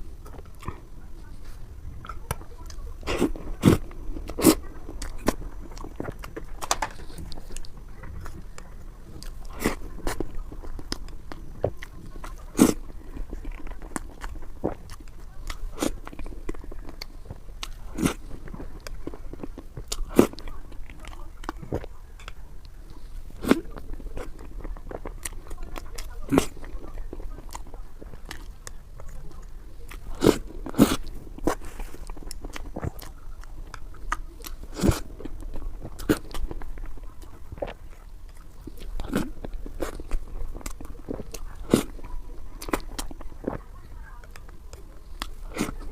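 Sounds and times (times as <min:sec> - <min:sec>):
biting and chewing: 0:00.0 - 0:45.9
food crunching: 0:00.0 - 0:45.9.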